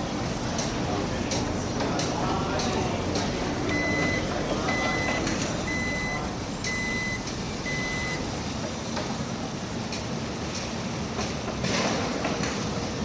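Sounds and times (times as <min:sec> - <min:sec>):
construction site noise: 0:00.0 - 0:13.0
backup alarm beeping: 0:03.7 - 0:08.3.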